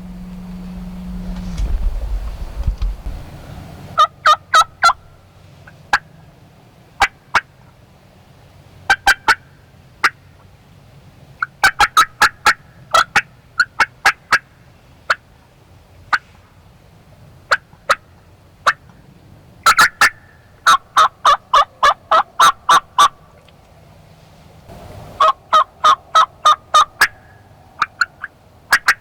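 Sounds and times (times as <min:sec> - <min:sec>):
turkey yelps and clucks: 0:08.9 - 0:09.4, 0:11.4 - 0:14.4, 0:19.6 - 0:23.3, 0:25.2 - 0:29.0.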